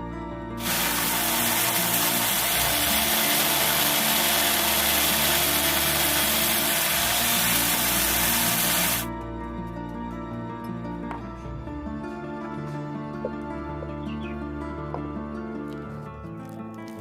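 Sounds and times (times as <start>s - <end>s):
power tool running: 0.6s - 9.1s.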